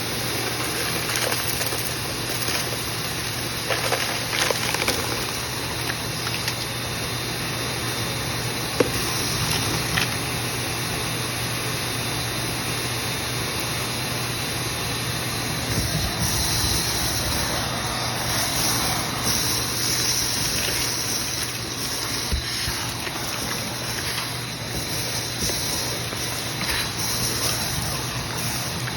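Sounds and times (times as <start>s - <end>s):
low motor hum: 15.2s - 28.9s.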